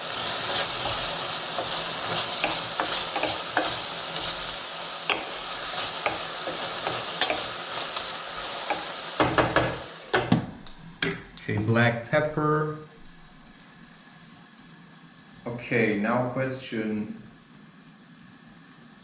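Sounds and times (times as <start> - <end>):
food sizzling in a frying pan: 0.0 - 11.3
louder knocks: 9.2 - 10.6.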